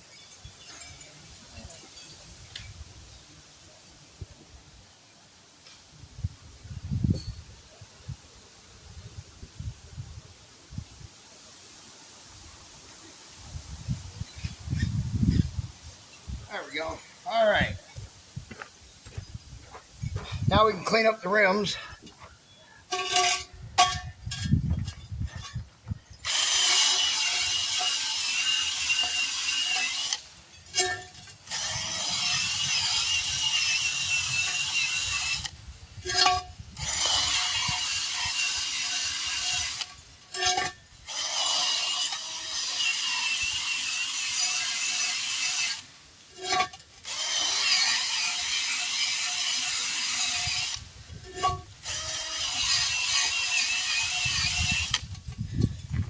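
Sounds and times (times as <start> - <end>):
wire wheel brush grinding metal: 22.8 - 25.6, 26.2 - 56.0
power tool motor whine: 26.2 - 45.8, 46.4 - 55.2.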